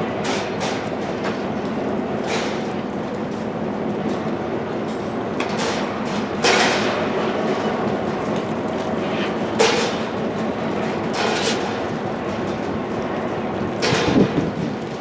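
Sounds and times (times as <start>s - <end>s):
train cars rumbling on rails: 0.0s - 15.0s
sharp bangs of train cars: 13.8s - 15.0s.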